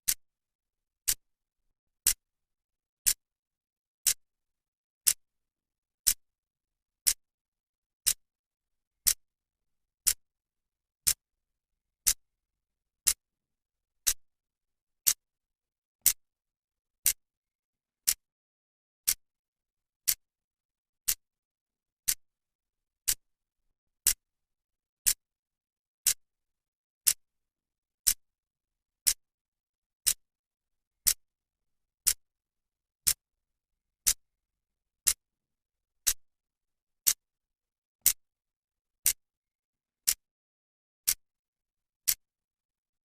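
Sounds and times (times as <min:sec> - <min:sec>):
clock ticking: 0:18.0 - 0:18.2, 0:23.0 - 0:23.2.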